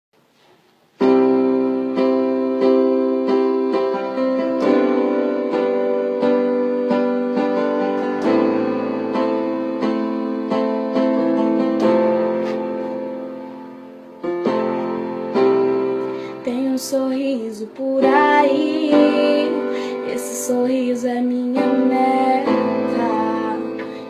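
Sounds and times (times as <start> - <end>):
piano chords: 0.9 - 24.0.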